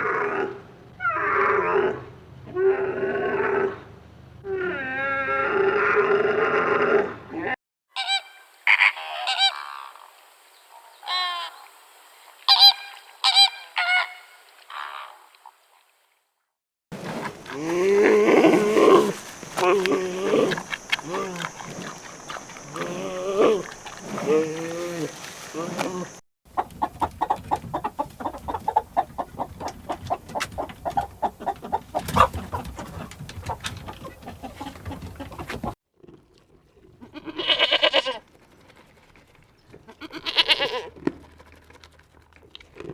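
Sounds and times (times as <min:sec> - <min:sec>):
geese honking: 0:17.0 - 0:26.2
chickens clucking: 0:17.0 - 0:32.8.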